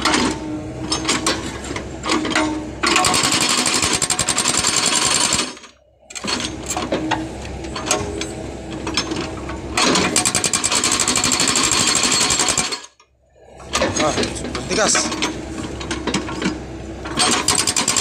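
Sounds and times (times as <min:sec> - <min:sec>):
hydraulic breaker hammering rock: 0:02.1 - 0:05.6, 0:09.8 - 0:12.9, 0:17.1 - 0:18.0.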